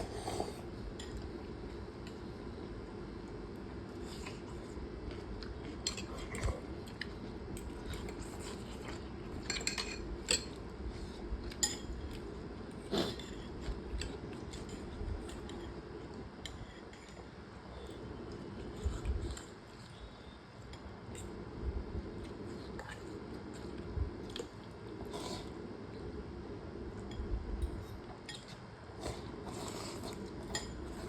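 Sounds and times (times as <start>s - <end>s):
cutlery clinking against a bowl: 5.8s - 6.4s, 9.4s - 10.6s, 11.4s - 12.2s, 27.0s - 28.6s, 30.4s - 31.0s.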